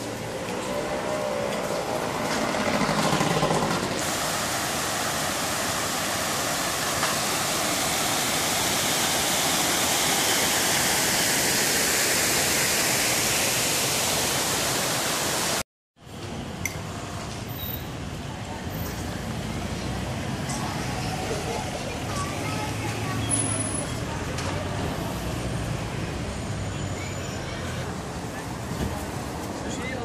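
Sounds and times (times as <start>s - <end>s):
heavy rain pouring: 0.0s - 15.6s.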